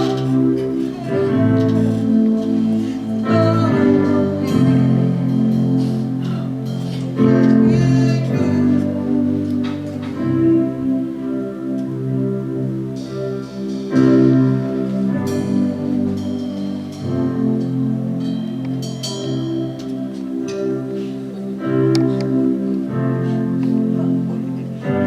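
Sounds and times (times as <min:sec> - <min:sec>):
person singing: 0:00.0 - 0:10.9
music with slow held chords: 0:00.0 - 0:25.0.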